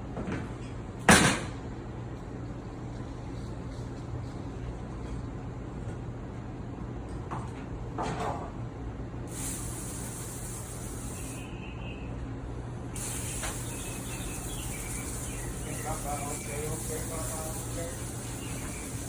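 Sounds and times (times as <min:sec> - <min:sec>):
steady low hum: 0:08.6 - 0:19.0
tap water spraying into metal sink: 0:13.0 - 0:19.0.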